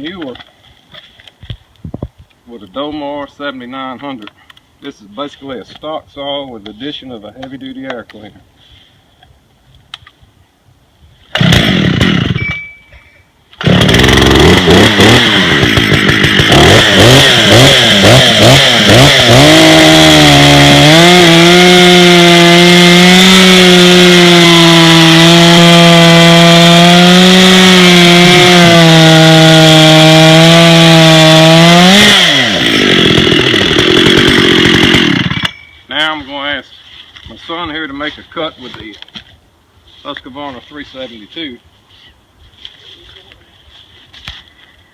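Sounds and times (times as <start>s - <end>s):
chainsaw revving and cutting log: 11.4s - 12.4s, 13.6s - 35.5s.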